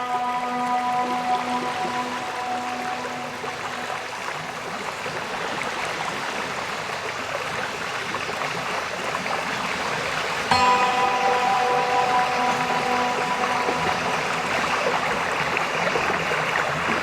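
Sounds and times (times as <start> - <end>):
soft music: 0.0 - 5.1, 10.5 - 17.0
stream running water: 0.0 - 17.0.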